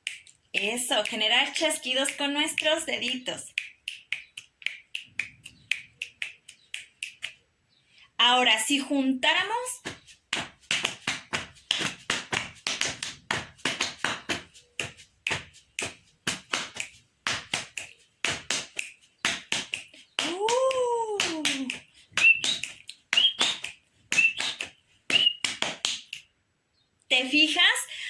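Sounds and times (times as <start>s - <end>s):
hand claps slaps and snaps: 0.0s - 7.4s, 9.8s - 26.3s
high chirp-like mouth sounds: 3.2s - 8.1s, 17.7s - 25.4s.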